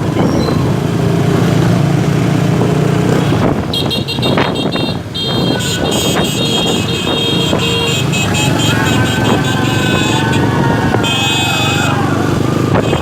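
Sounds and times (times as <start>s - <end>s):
motorbike and car engines in traffic: 0.0s - 13.0s
high-pitched horn honking: 3.2s - 12.0s, 12.8s - 13.0s.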